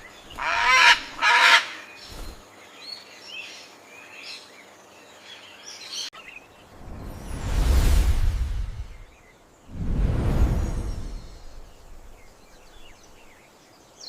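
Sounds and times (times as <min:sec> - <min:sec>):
bird harsh call: 0:00.3 - 0:01.9.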